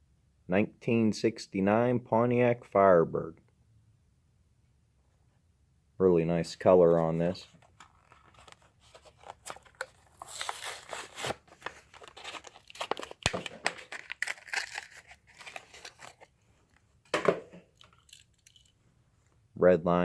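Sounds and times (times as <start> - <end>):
person's voice: 0.5 - 3.4, 6.0 - 7.6, 19.6 - 20.0
cardboard and plastic tearing: 7.6 - 16.3.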